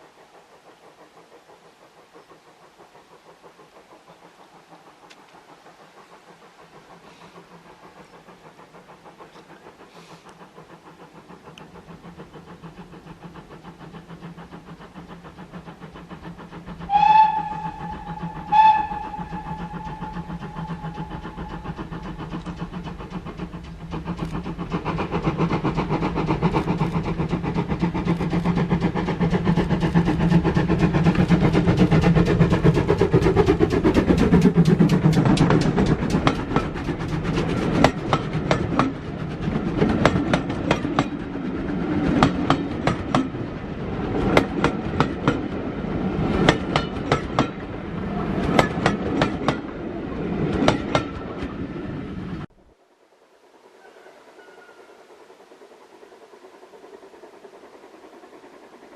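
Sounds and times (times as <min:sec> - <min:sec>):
steam locomotive running: 0:00.0 - 0:58.9
steam locomotive whistle: 0:16.8 - 0:21.6, 0:53.7 - 0:55.0.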